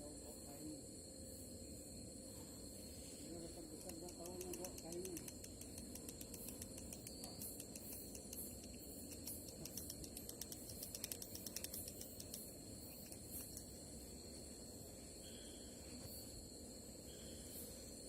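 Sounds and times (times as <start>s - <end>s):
cricket trill: 0.0s - 18.0s
insect ticking pulses: 3.4s - 14.4s.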